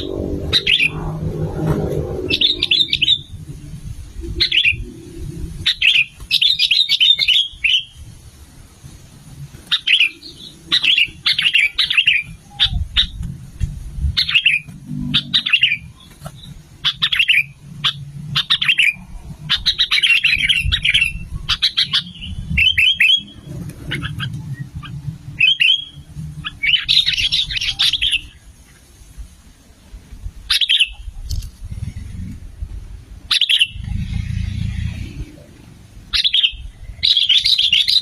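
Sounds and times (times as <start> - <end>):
bird chattering calls: 0.0 - 1.3, 2.2 - 3.5, 4.2 - 8.0, 9.6 - 13.2, 14.1 - 28.4, 30.5 - 32.0, 33.3 - 35.4, 36.1 - 38.0
low rumbling noise: 0.0 - 38.0.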